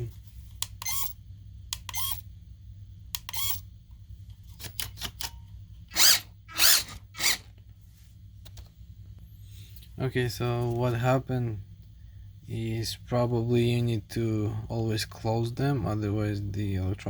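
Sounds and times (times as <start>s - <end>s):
toy headlight mechanism clicking and whirring: 0.6s - 2.3s, 3.2s - 3.7s, 4.6s - 7.5s.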